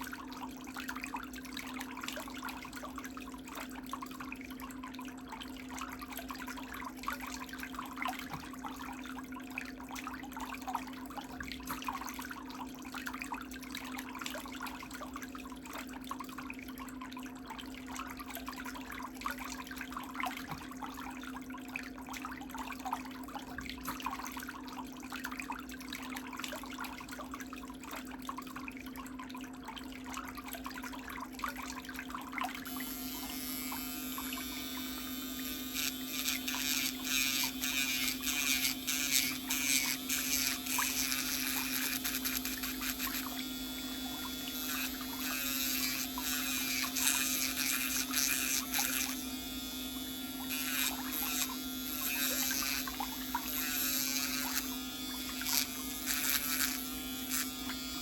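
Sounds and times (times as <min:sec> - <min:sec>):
drill bit grinding toenail: 0:32.6 - 0:58.0
nail drill motor hum: 0:32.6 - 0:58.0.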